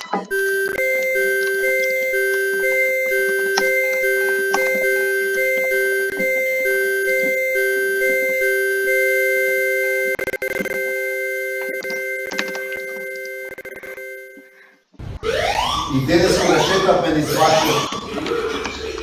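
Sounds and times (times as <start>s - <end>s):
electronic two-note chord: 0.3s - 14.5s.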